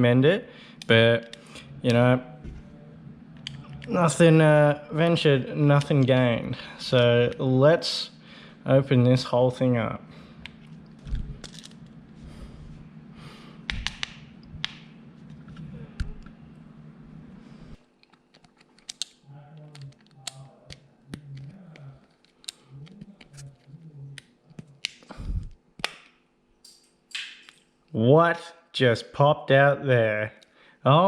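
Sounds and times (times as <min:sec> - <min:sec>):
low steady hum: 0:00.0 - 0:31.0
small plastic parts clicking: 0:18.0 - 0:23.6.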